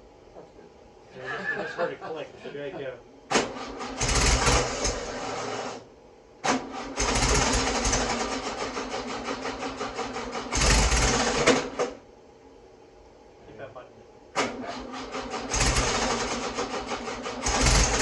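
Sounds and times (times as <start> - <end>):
car engine cranking and firing: 3.3 - 5.8, 6.4 - 12.0, 14.4 - 18.0.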